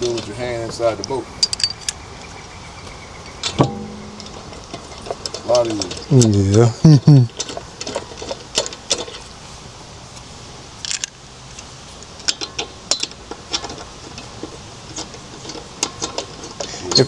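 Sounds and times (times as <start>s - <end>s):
wrench and lug nuts clinking: 0.0s - 2.0s, 3.4s - 6.4s, 10.8s - 11.2s
low steady hum: 1.3s - 10.8s.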